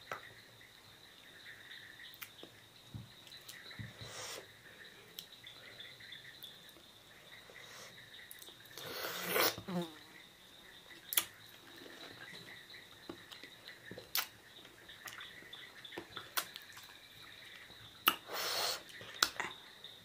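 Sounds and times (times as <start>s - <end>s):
mouth clicks and smacks: 2.1s - 2.6s, 11.1s - 11.4s, 13.1s - 14.4s, 15.9s - 16.9s, 17.6s - 19.6s
short breathy hiss: 18.2s - 18.9s.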